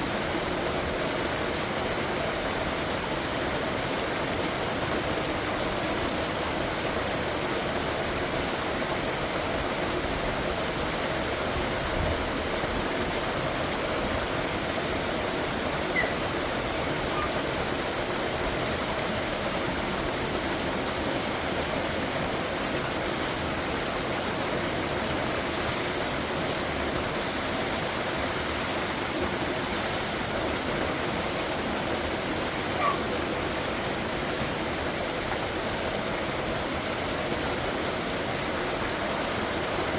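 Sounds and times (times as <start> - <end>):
waterfall rushing: 0.0 - 39.9
faint chirps: 15.9 - 16.2.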